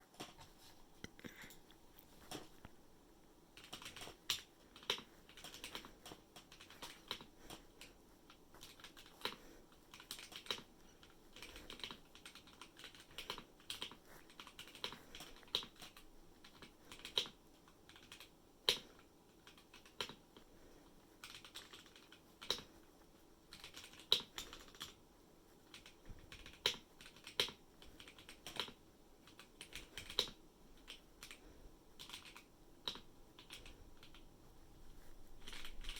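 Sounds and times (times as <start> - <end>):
mechanical keyboard typing: 3.6 - 20.4, 21.2 - 22.8, 23.5 - 25.0, 25.7 - 31.4, 32.0 - 34.3, 35.4 - 35.9.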